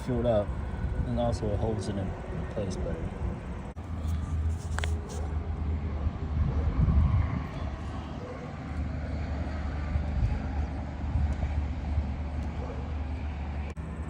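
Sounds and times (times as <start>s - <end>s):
low engine rumble: 0.0s - 14.0s.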